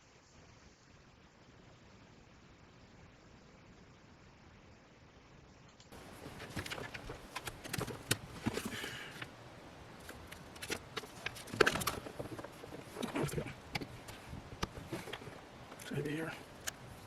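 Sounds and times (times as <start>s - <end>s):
clicks and rattles of plastic trim: 6.0s - 9.3s, 10.0s - 16.9s.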